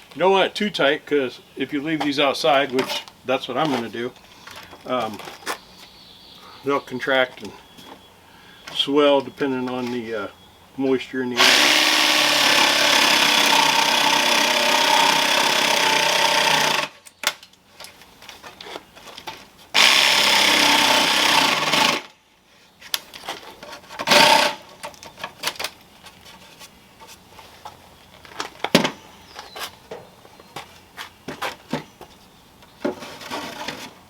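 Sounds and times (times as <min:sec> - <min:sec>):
handheld power tool running: 0:11.4 - 0:17.0, 0:19.8 - 0:22.1, 0:24.1 - 0:24.6.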